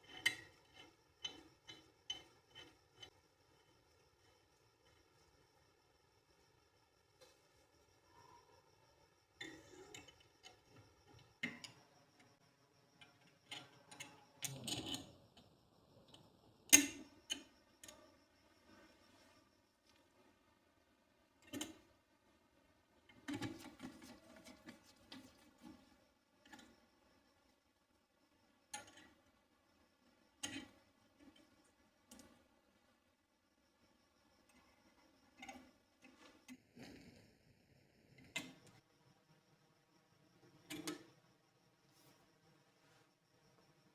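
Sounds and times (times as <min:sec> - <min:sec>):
small metal parts clicking: 0:00.0 - 0:03.2.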